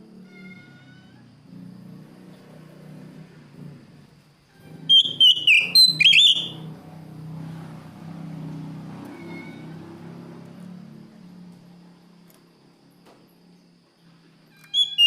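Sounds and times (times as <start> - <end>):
bird whistling song: 4.9 - 6.6, 14.6 - 15.0.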